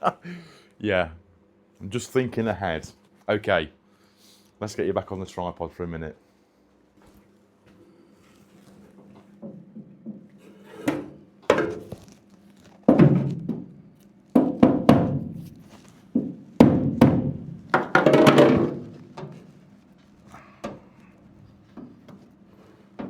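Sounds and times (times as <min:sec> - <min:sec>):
knocks on sheet steel: 0:12.9 - 0:13.8, 0:14.4 - 0:15.5, 0:16.2 - 0:19.4.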